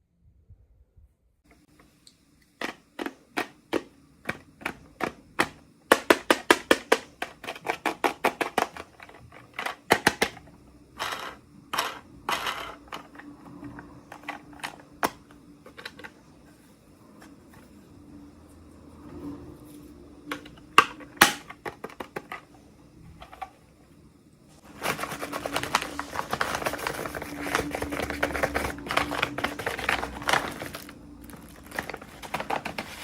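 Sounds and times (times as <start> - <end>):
plastic packaging clicks and taps: 2.6 - 9.1
packaging rustling: 24.6 - 33.0.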